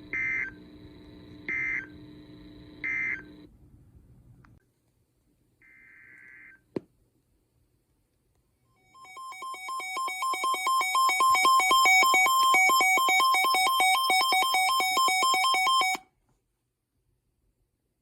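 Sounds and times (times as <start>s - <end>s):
warbling electronic alert tone: 8.9s - 16.0s.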